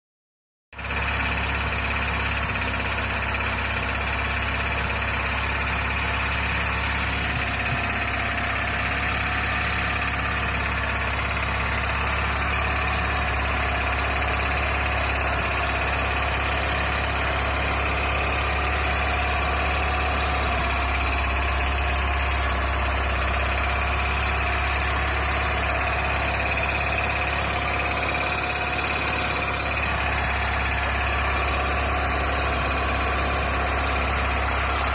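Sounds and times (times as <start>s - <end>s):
car engine idling: 0.8s - 34.9s
water pump knocking: 6.3s - 10.5s.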